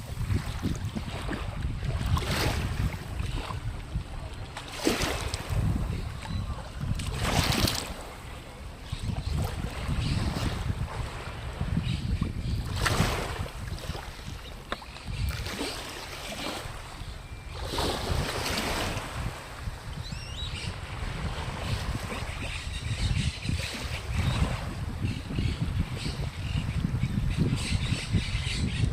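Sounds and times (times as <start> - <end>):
wind buffeting microphone: 0.0 - 28.9.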